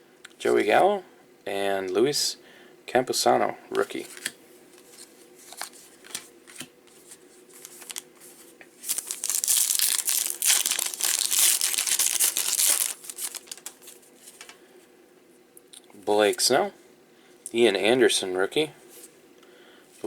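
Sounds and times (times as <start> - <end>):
foil wrapper crinkling: 7.5 - 8.1, 8.8 - 14.6.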